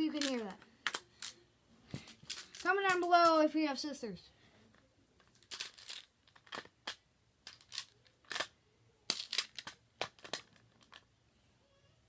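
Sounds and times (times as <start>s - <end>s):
plastic building tiles clicking: 0.0s - 1.4s, 2.0s - 3.4s, 5.2s - 8.5s, 9.1s - 11.1s.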